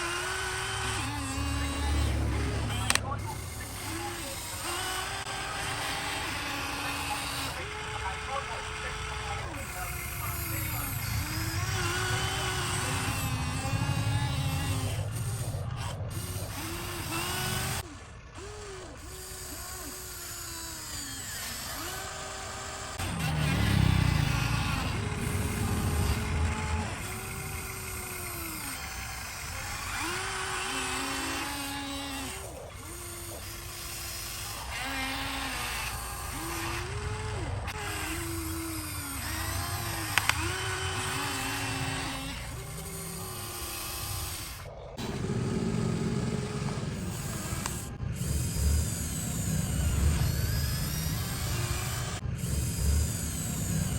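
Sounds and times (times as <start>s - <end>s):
small electric motors whining: 0.0s - 53.9s
low rumble: 10.8s - 17.8s, 23.0s - 29.8s.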